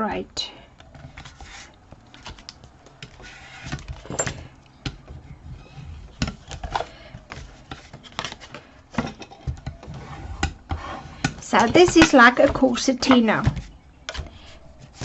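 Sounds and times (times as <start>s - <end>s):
paper and cardboard rustling: 1.0s - 8.8s.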